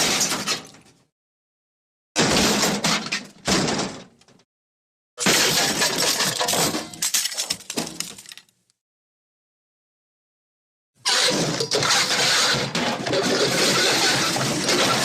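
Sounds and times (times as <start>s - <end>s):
crash with breaking glass: 5.2s - 8.4s
clattering debris: 5.2s - 8.6s.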